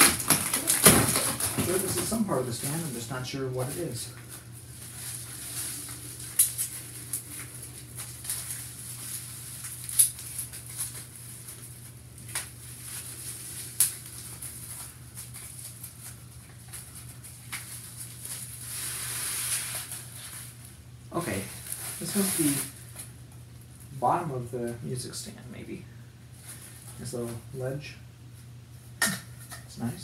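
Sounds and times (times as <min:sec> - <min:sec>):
packaging rustling: 0:00.0 - 0:20.6, 0:21.4 - 0:23.0
steady low hum: 0:00.0 - 0:30.0.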